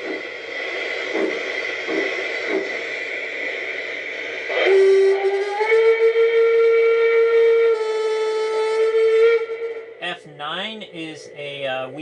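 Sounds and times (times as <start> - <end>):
steam hiss: 0.0 - 12.0
steam whistle: 4.3 - 10.2.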